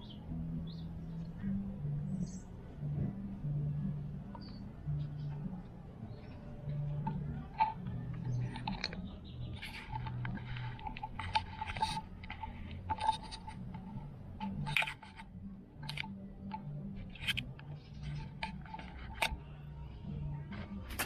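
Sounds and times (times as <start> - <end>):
low steady hum: 0.0 - 21.0
small objects clicking and rustling: 6.7 - 19.3.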